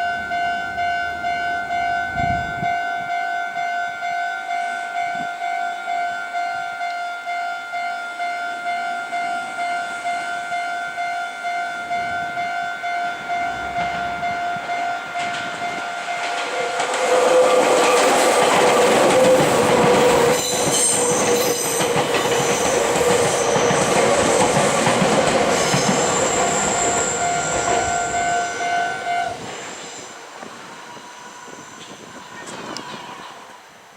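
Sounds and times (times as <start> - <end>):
level crossing warning bell: 0.0 - 29.1
train wheels clattering over rails: 14.8 - 28.4.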